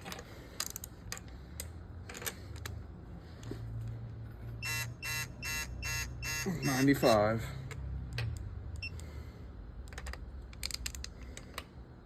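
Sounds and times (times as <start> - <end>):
torque wrench beeping rapidly: 4.6 - 7.3.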